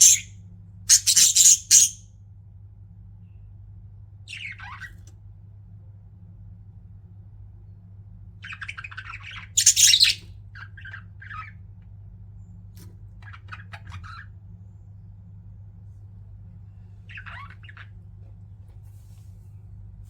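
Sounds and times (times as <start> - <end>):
budgerigars chattering and chirping: 0.0 - 0.3, 0.9 - 2.0, 4.3 - 5.0, 8.4 - 11.6, 13.2 - 14.3, 17.1 - 18.0
harsh bird squawk: 0.0 - 0.3, 0.9 - 2.0, 4.3 - 5.0, 8.4 - 11.7, 17.0 - 18.0
steady low hum: 0.0 - 20.0.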